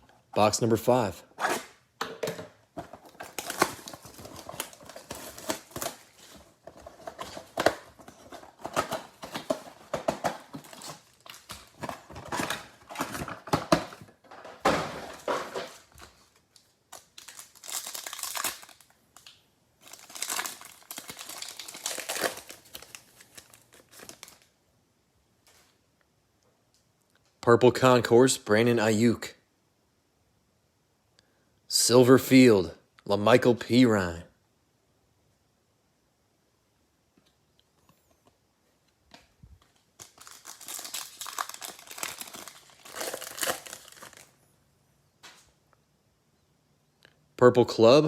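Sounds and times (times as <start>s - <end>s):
plastic wrapping tearing and crinkling: 3.0s - 13.7s, 15.1s - 24.5s, 39.6s - 44.3s.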